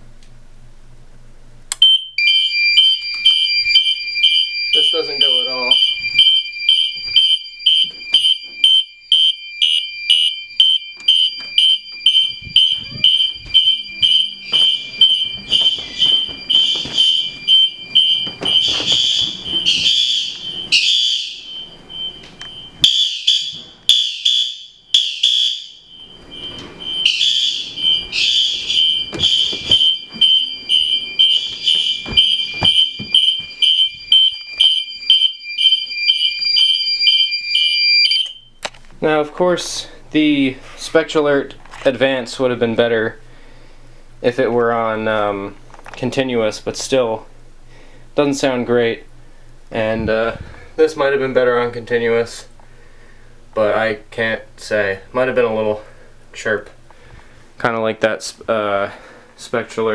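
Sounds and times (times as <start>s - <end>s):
pulsing fire alarm horn: 1.8s - 38.5s
steady alarm tone: 1.8s - 38.6s.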